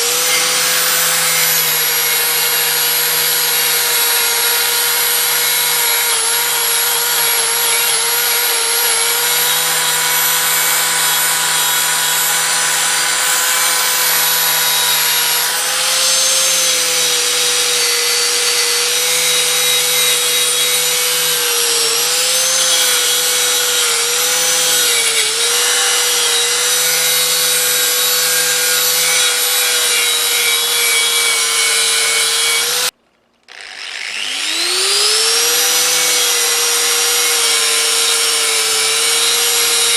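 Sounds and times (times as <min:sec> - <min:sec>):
electric grinder motor running: 0:00.0 - 0:32.9, 0:33.5 - 0:39.9.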